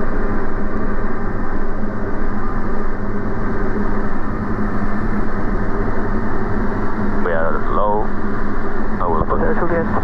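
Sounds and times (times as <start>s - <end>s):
airplane engine droning: 0.0s - 10.0s.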